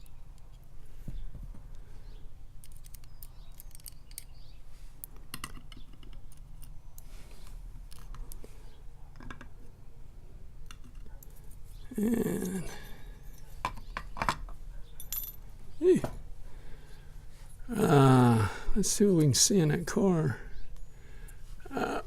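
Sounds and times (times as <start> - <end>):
metallic clicks of tools: 2.6 - 4.4.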